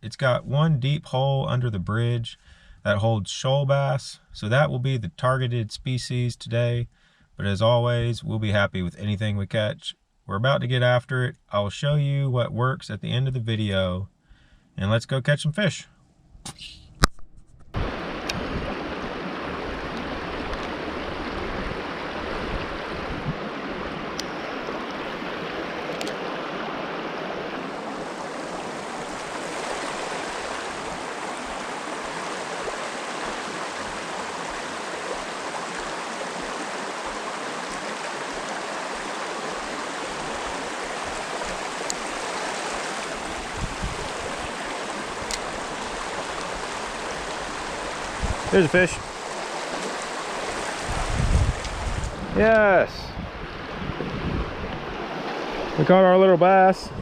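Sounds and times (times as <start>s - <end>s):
water rushing over rocks: 17.8s - 52.9s.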